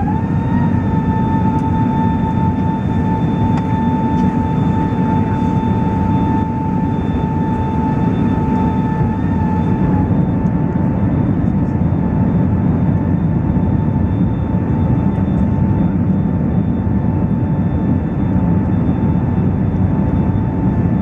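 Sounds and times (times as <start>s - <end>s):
jet engines whining: 0.0s - 21.0s.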